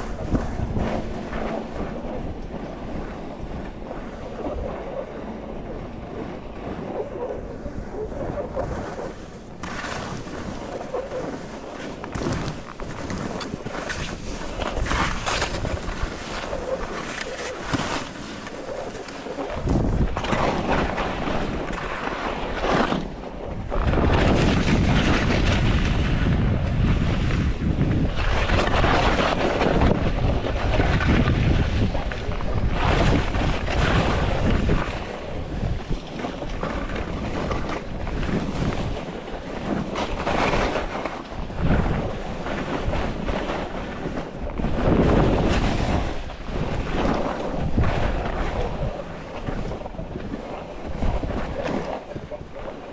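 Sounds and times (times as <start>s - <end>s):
wind buffeting microphone: 0.0s - 52.9s
skis scraping on snow: 8.6s - 25.8s.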